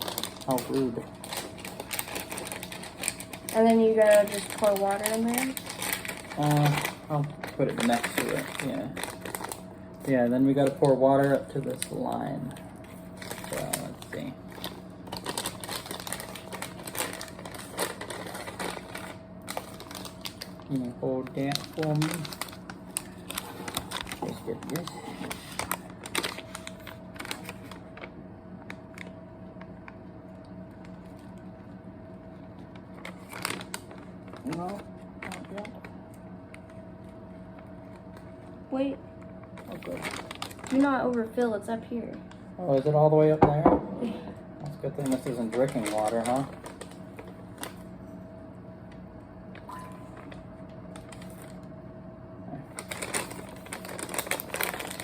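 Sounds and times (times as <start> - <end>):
plastic bag handled: 0.0 - 28.1, 32.8 - 35.9, 39.6 - 41.2, 43.5 - 47.9, 52.8 - 55.0
plastic crinkling: 0.0 - 30.0, 32.6 - 38.5, 39.3 - 42.8, 44.0 - 48.0, 49.5 - 51.7, 52.7 - 55.0
plastic packaging crackling: 0.0 - 31.5, 32.6 - 38.4, 39.3 - 42.8, 44.0 - 48.0, 49.5 - 51.7, 52.7 - 55.0
low steady hum: 0.0 - 55.0.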